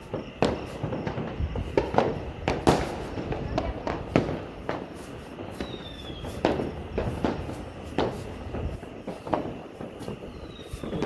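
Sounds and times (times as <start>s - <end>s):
fireworks bangs: 0.0s - 11.0s
rumble of firework bursts: 0.0s - 11.0s.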